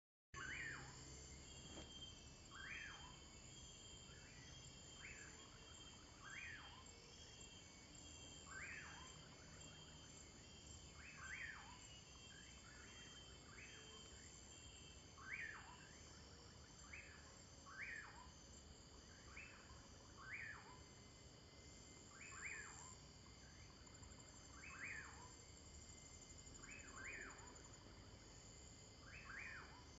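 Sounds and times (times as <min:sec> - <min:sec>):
high insect chorus: 0:00.4 - 0:30.0.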